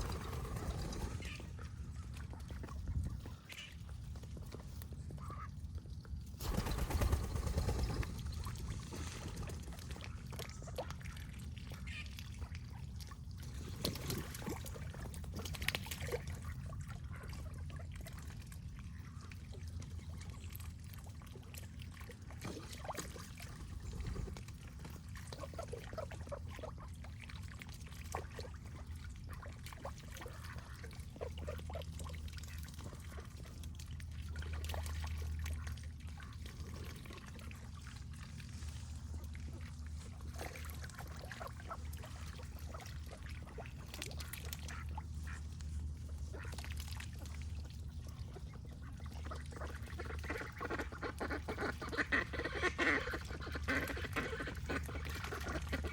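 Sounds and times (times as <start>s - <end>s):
water trickling and splashing: 0.0s - 55.9s
steady low rumble: 28.6s - 55.9s.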